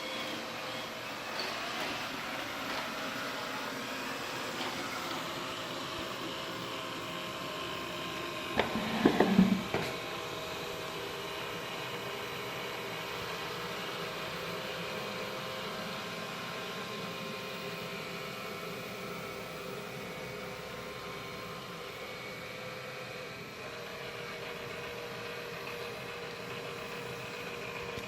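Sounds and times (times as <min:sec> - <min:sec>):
robot vacuum running: 0:08.5 - 0:11.5.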